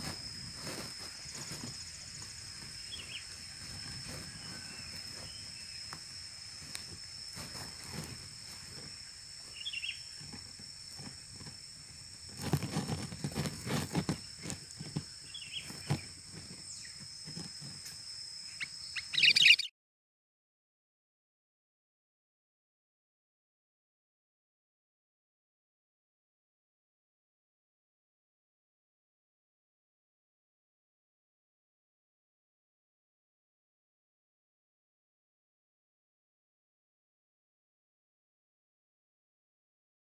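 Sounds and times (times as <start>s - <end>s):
rustling: 0.0s - 18.0s
high-pitched insect drone: 0.0s - 19.7s
bird chirps: 2.8s - 5.8s, 9.5s - 10.2s, 15.2s - 16.0s, 18.5s - 19.7s.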